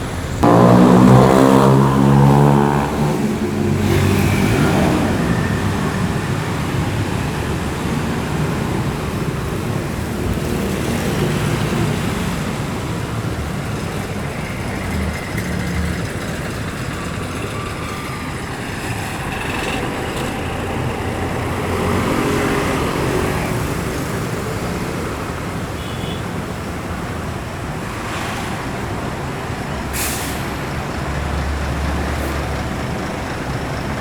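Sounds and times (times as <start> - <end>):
heavy vehicle engine running: 0.0 - 25.8, 26.4 - 34.0
air brake hiss: 29.9 - 30.7.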